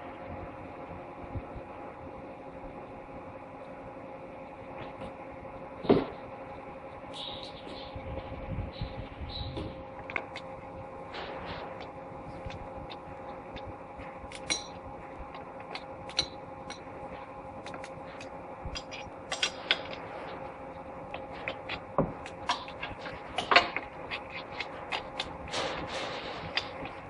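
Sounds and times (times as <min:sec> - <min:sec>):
steady hum: 0:00.0 - 0:27.0.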